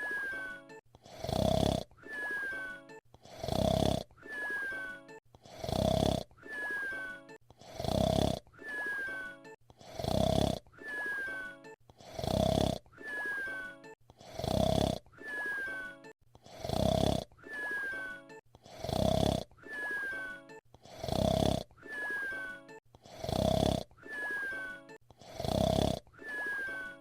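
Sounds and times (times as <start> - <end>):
short falling whistle: 0.0 - 0.7, 2.1 - 2.8, 4.3 - 5.0, 6.5 - 7.2, 8.6 - 9.4, 10.8 - 11.6, 13.0 - 13.8, 15.2 - 16.0, 17.5 - 18.2, 19.7 - 20.4, 21.9 - 22.6, 24.1 - 24.8, 26.2 - 27.0
cartoon snore: 0.0 - 27.0.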